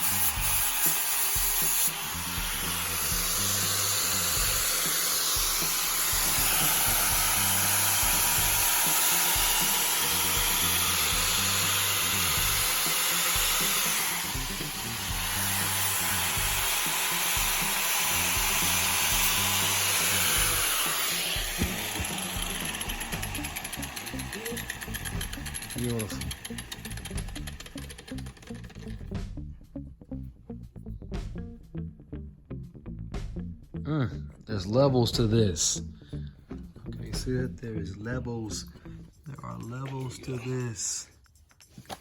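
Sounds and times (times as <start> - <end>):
background music with bass beat: 0.0 - 13.6, 26.8 - 34.4
power grinder grinding steel: 0.0 - 29.1.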